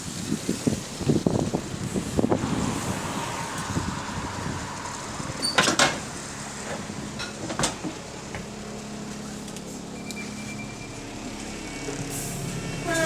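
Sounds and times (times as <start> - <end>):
bus engine hum: 0.0 - 13.0
bus whine: 0.6 - 13.0
bus doors knocking: 5.5 - 8.5.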